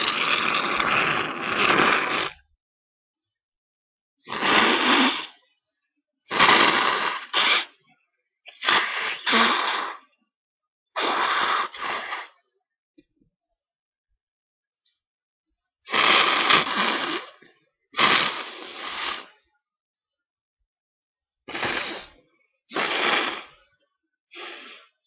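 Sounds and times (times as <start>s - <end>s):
person blowing nose: 0.0s - 2.4s, 4.3s - 5.4s, 6.3s - 7.8s, 8.5s - 10.1s, 11.0s - 12.4s, 15.9s - 19.4s, 21.5s - 23.6s, 24.3s - 25.0s.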